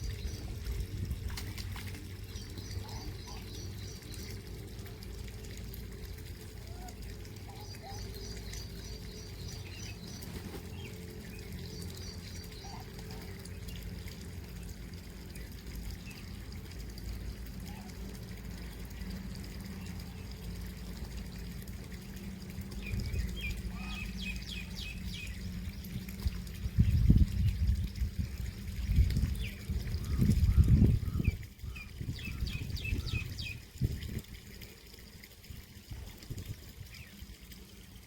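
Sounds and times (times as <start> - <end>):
small birds chirping: 0.0 - 16.7, 21.9 - 34.1
flowing water: 0.0 - 38.0.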